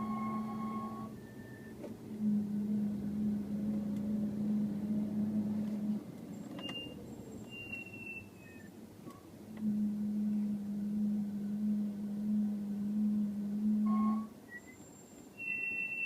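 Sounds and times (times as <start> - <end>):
high-pitched brake squeals: 0.0 - 1.8, 6.3 - 8.7, 13.9 - 16.0
brakes humming: 0.0 - 16.0.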